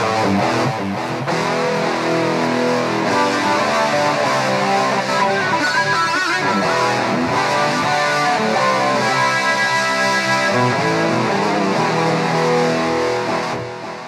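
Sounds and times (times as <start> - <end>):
electric guitar chords: 0.0 - 14.0.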